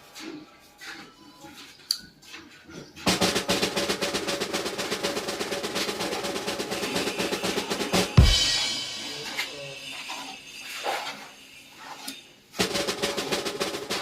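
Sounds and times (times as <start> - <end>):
fast drum roll: 3.0 - 9.9, 12.6 - 14.0
held musical note: 3.1 - 10.5.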